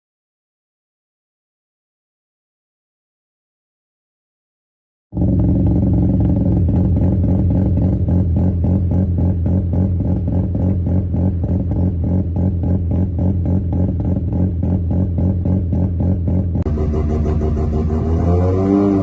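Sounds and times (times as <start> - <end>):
rotary engine idling: 15.9 - 18.2.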